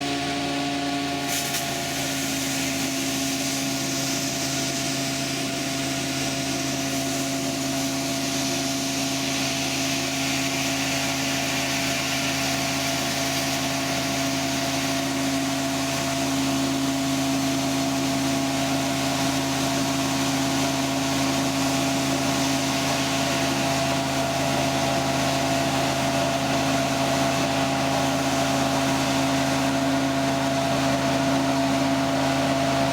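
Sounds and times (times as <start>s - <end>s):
high-pressure water hiss: 1.2s - 32.9s.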